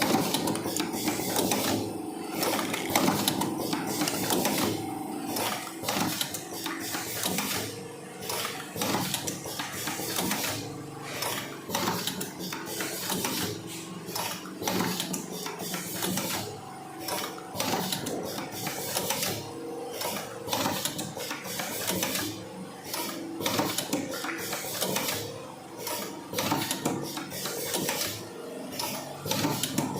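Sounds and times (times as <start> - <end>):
machine mechanism clacking: 0.0 - 1.8, 2.4 - 10.6, 11.2 - 19.4, 22.9 - 28.2.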